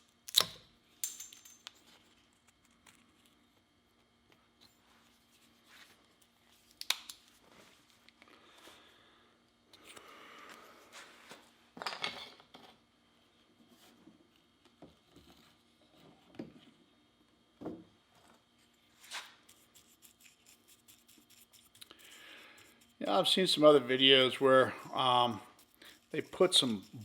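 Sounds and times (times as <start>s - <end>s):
tools knocking and clinking: 1.0s - 1.7s
rubbing on a workbench: 25.2s - 27.0s.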